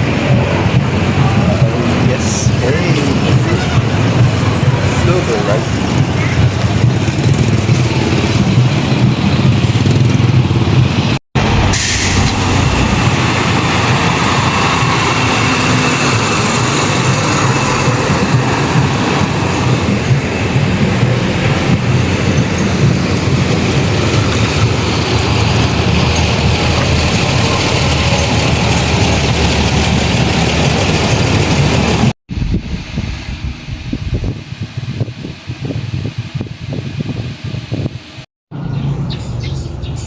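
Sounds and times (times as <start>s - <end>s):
vehicle engine and road noise: 0.0s - 32.2s.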